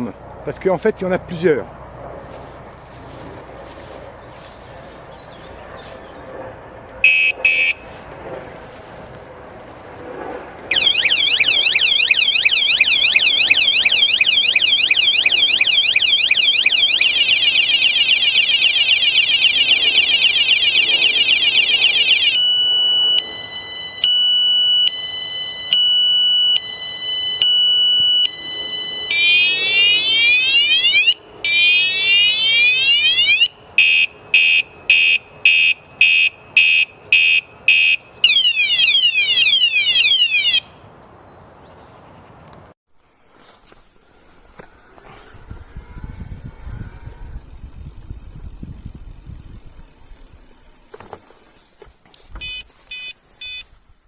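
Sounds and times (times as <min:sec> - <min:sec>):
motorcycle alarm siren: 0:07.0 - 0:07.9, 0:10.7 - 0:40.7, 0:44.5 - 0:51.1, 0:52.4 - 0:53.7.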